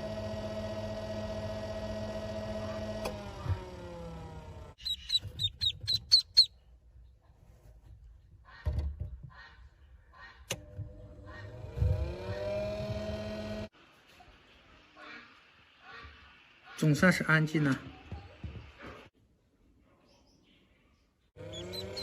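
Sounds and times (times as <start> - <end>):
motor hum: 0.0 - 6.5, 10.5 - 13.7, 21.4 - 22.0
duckling peeping: 4.8 - 6.6, 21.5 - 22.0.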